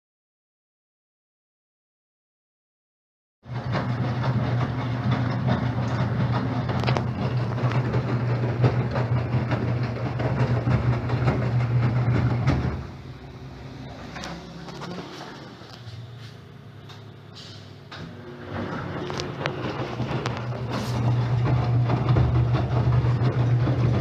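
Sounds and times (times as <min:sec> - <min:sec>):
washing machine running: 0:03.4 - 0:24.0.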